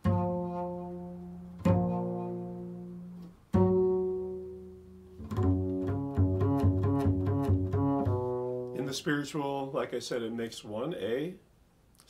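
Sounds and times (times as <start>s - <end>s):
plucked low string instrument: 0.0s - 8.9s.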